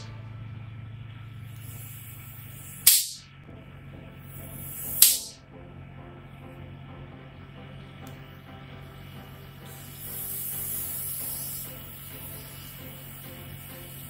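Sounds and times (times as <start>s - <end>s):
steady low hum: 0.0s - 14.0s
aerosol spray can hissing: 1.6s - 3.2s, 4.3s - 5.4s, 9.6s - 14.0s.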